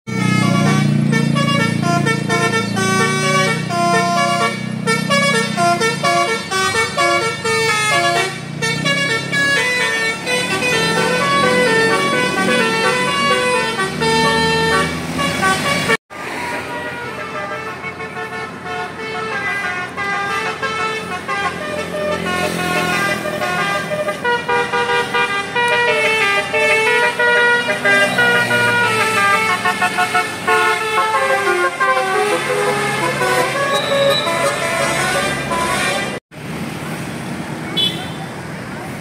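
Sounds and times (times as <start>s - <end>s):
bus musical horn melody: 0.1s - 36.2s, 37.8s - 38.2s.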